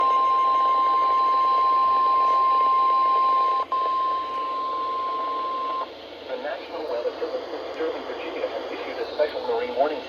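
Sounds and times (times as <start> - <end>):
high-pitched alarm tone: 0.0 - 5.8
radio hiss: 0.6 - 10.0.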